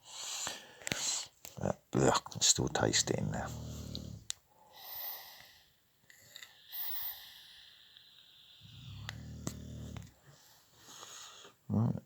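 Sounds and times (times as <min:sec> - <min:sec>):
faint breathing: 0:00.0 - 0:01.3, 0:03.3 - 0:11.7.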